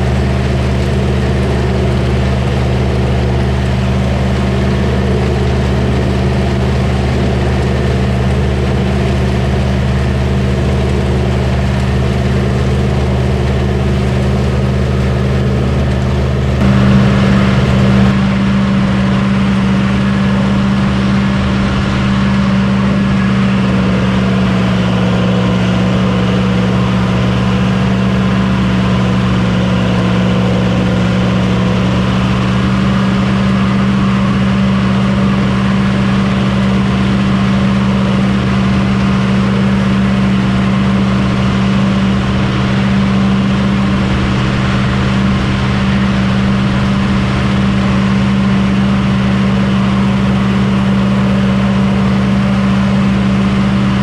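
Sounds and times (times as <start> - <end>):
diesel engine humming: 0.0 - 54.0.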